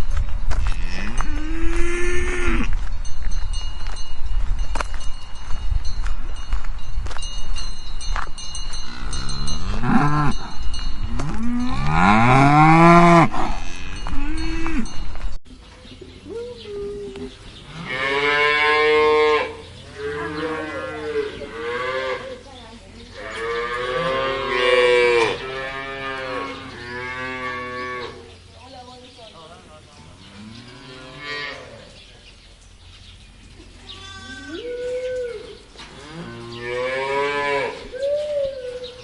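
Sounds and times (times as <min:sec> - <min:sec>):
cows mooing: 0:00.6 - 0:02.8, 0:08.9 - 0:15.0, 0:17.7 - 0:22.4, 0:23.2 - 0:28.3, 0:34.0 - 0:37.9.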